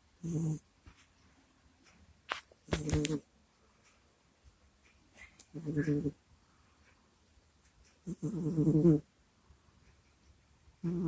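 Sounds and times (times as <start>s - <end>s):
cat snoring: 5.5s - 6.2s, 8.0s - 9.1s, 10.8s - 11.0s.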